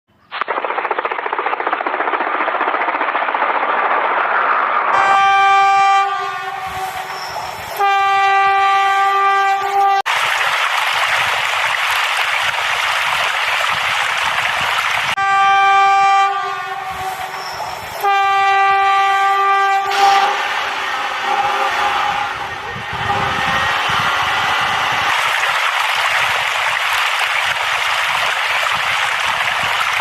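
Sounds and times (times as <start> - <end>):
train rushing rumble: 2.7 - 30.0
train horn blasts: 5.0 - 10.1, 15.2 - 25.2.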